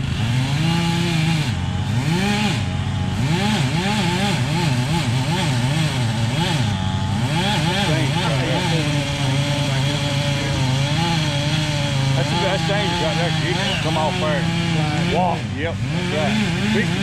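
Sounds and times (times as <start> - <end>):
chainsaw cutting wood: 0.0 - 17.0.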